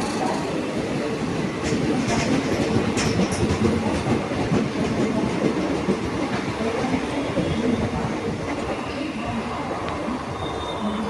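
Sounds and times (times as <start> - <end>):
train rumbling on track: 0.0 - 11.0.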